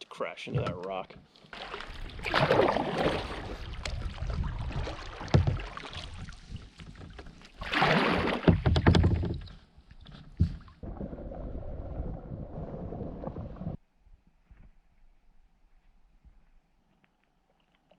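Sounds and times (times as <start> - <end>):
paddle splashing in water: 0.5 - 13.8.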